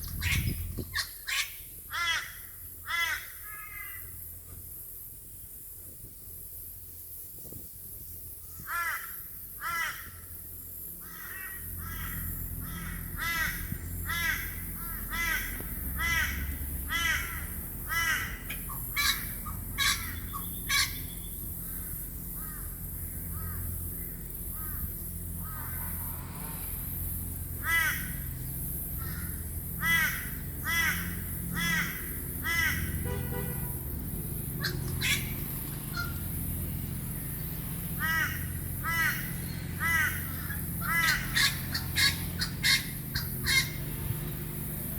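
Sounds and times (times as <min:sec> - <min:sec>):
steady low rumble: 0:00.0 - 0:44.9
crow cawing: 0:01.0 - 0:04.1, 0:08.7 - 0:10.4, 0:11.0 - 0:26.1, 0:27.6 - 0:28.3, 0:29.0 - 0:33.2, 0:34.6 - 0:36.3, 0:37.9 - 0:43.8.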